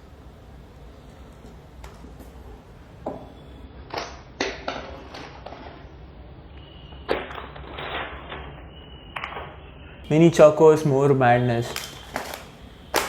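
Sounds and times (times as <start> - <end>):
plastic snack packet crinkling: 11.6 - 13.0.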